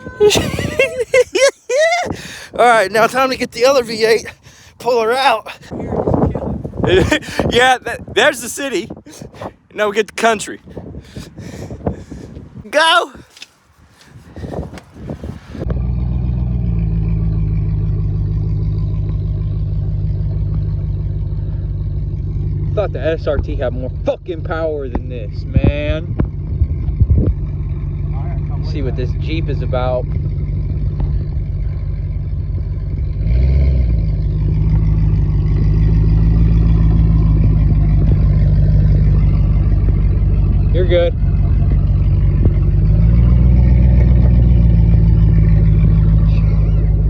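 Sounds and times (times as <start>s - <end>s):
car engine at high revs: 14.5s - 47.0s.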